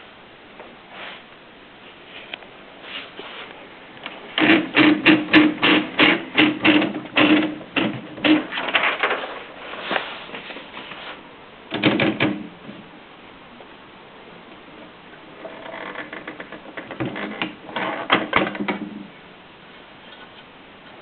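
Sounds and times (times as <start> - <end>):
typewriter typing: 4.4 - 9.2.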